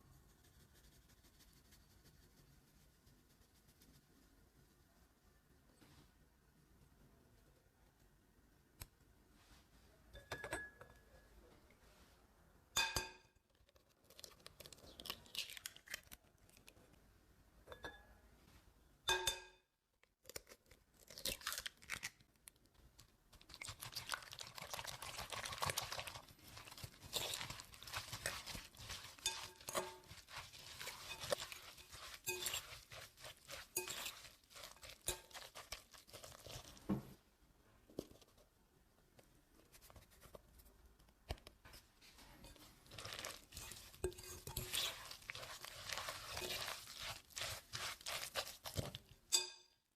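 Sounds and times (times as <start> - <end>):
crunchy scraping and rustling: 23.7 - 36.9, 42.4 - 49.0
utensil clinking against bowl: 26.8 - 36.6, 42.4 - 49.7.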